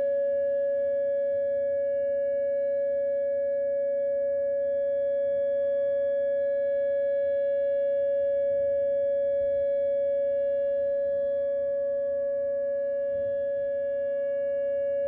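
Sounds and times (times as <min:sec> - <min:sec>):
warning siren steady tone: 0:00.0 - 0:15.0.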